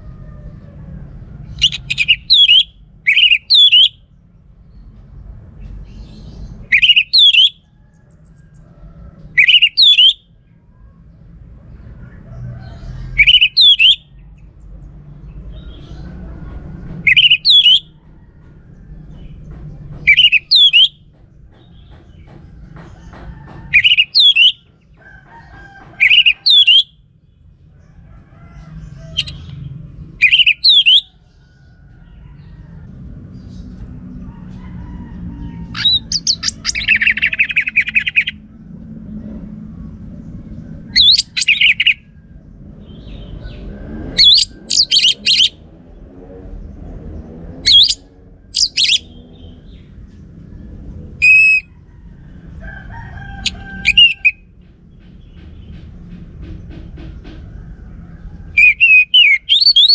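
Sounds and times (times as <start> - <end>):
thrush singing whistled phrases: 1.6 - 4.0, 6.7 - 7.6, 9.4 - 10.2, 13.2 - 14.0, 17.0 - 17.9, 20.1 - 21.0, 23.8 - 24.6, 26.0 - 26.9, 30.2 - 31.1, 35.8 - 38.3, 41.0 - 42.0, 44.2 - 45.6, 47.7 - 48.0, 48.6 - 49.1, 51.2 - 51.7, 53.8 - 54.4, 58.6 - 59.9
faint low rumble: 27.0 - 58.6.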